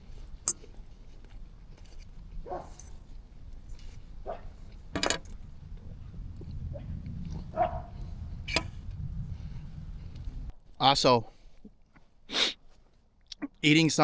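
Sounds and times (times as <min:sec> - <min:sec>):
distant dog barking: 0:02.4 - 0:02.8, 0:04.2 - 0:04.6, 0:05.9 - 0:08.6
low rumble: 0:04.8 - 0:10.6.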